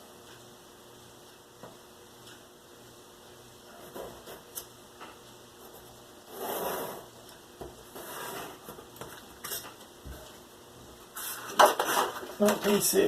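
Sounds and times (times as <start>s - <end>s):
scraping on cardboard: 6.3s - 7.1s, 7.9s - 8.8s.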